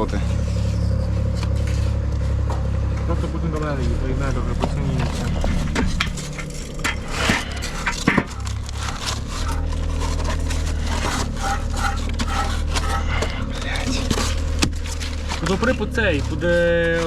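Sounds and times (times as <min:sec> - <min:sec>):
steady low hum: 0:00.1 - 0:16.6
scraping: 0:03.7 - 0:17.0
sharp knocks and clicks: 0:04.6 - 0:15.4.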